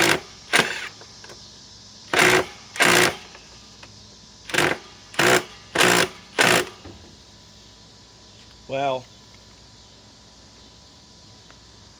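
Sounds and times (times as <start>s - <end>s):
impact driver driving screw: 0.0s - 1.0s, 2.1s - 3.4s, 4.5s - 6.9s.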